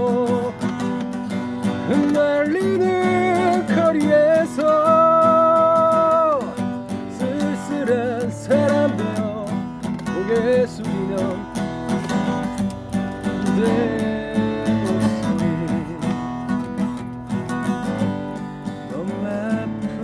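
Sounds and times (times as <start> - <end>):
person singing: 0.0 - 1.1, 1.8 - 11.6, 13.2 - 16.3
acoustic guitar strumming: 0.0 - 20.0.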